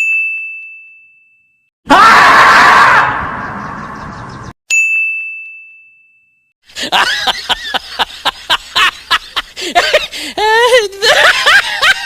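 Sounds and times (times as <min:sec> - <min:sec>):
snickering laughter: 0:06.8 - 0:12.0.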